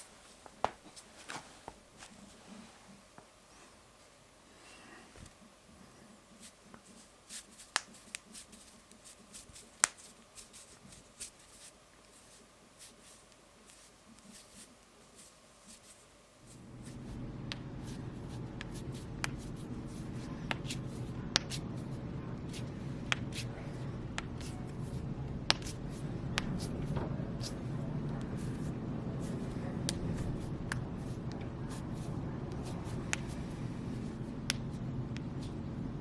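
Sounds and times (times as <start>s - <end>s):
steady low hum: 0.0s - 36.0s
knuckles cracking: 7.6s - 8.3s, 9.8s - 10.2s.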